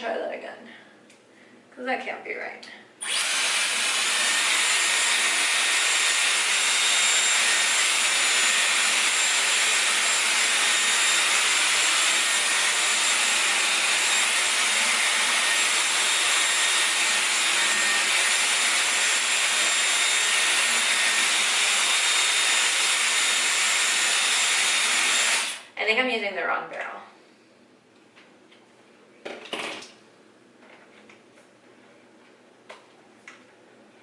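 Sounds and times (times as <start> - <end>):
hair styler air rush: 3.0 - 25.7.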